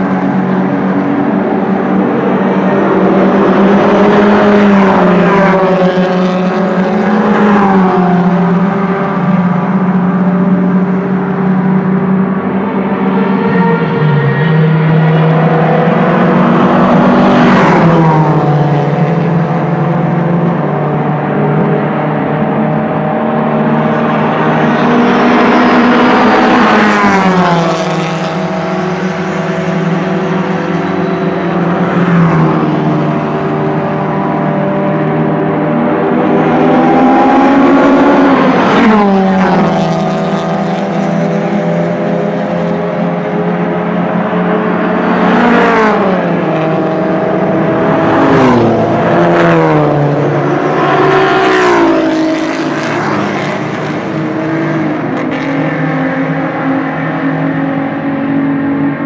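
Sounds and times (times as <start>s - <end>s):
engines running: 0.0s - 59.0s
sports cars passing at speed: 0.0s - 59.0s.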